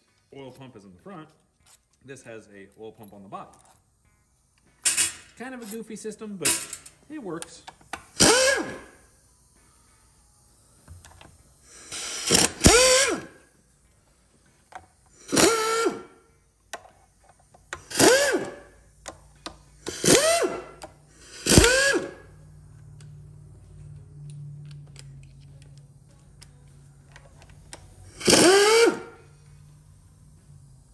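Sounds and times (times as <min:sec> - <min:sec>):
cordless power driver whirring: 0:07.8 - 0:09.8, 0:10.8 - 0:13.5, 0:14.7 - 0:23.0, 0:25.8 - 0:29.4.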